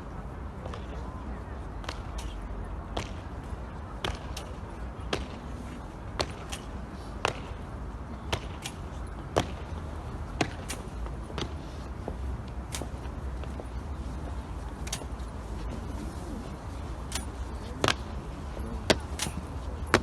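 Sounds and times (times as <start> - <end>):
low outdoor rumble: 0.0 - 20.0
hard heels on stone paving: 8.2 - 20.0.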